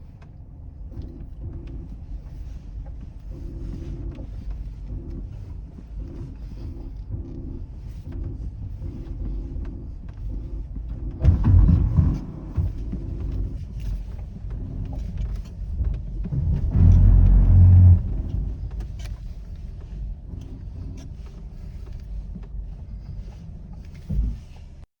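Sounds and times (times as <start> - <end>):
car engine running: 0.0 - 24.8
short knocks: 11.2 - 13.5.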